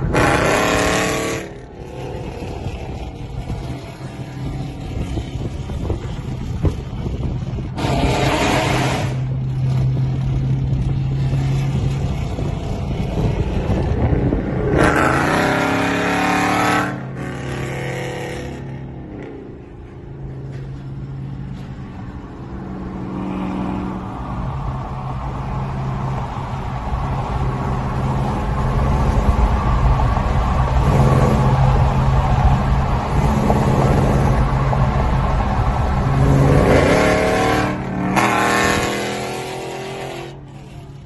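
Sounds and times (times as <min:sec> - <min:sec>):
loud car exhaust revving: 0:00.0 - 0:19.6, 0:28.4 - 0:41.0.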